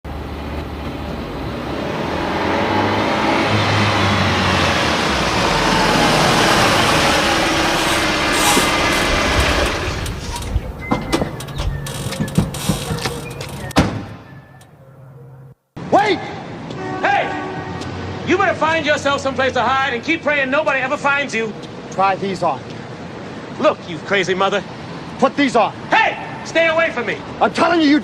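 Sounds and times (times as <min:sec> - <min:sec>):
vehicle engine running: 0:03.2 - 0:10.8
sharp clicks and knocks: 0:07.8 - 0:14.1.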